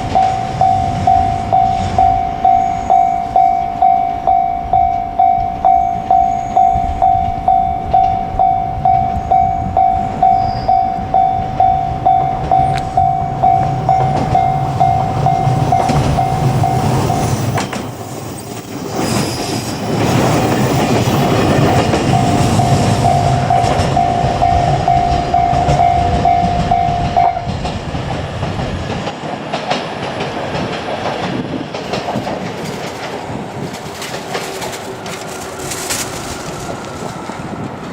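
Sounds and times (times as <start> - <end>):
level crossing warning bell: 0.0 - 18.6, 19.8 - 27.9
train rumbling past: 0.0 - 37.9.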